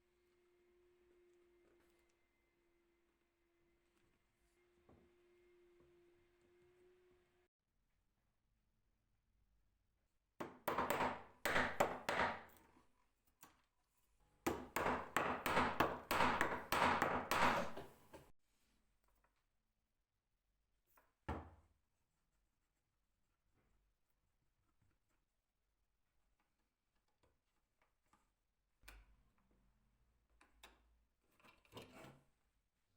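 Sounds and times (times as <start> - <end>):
hammer knocks on wood: 10.4 - 12.5, 14.5 - 17.9.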